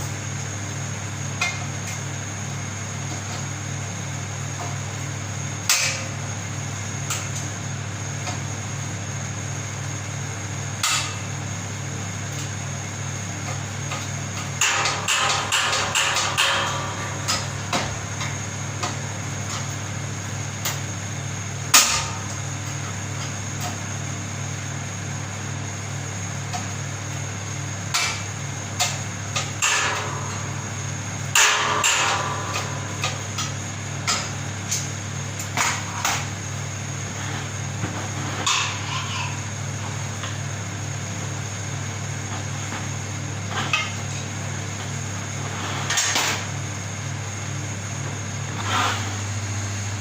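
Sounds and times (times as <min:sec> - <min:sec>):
steady low hum: 0:00.0 - 0:50.0
tools clanking on metal: 0:38.4 - 0:39.5.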